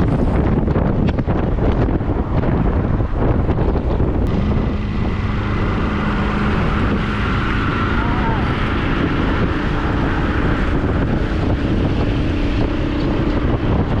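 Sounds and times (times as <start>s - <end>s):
steady low hum: 0.0s - 14.0s
wind buffeting microphone: 0.0s - 14.0s.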